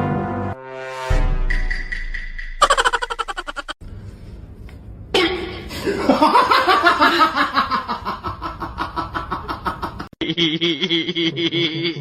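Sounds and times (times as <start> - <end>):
rapid pulsing laughter: 2.6 - 3.8.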